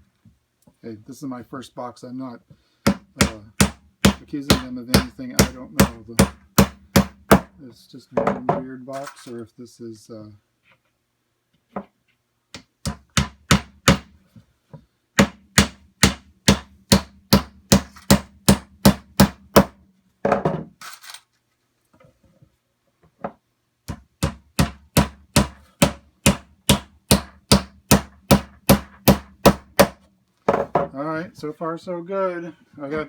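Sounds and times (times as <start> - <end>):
hammer driving nails into wood: 2.9 - 7.5, 12.6 - 14.1, 15.2 - 19.7, 23.9 - 30.0.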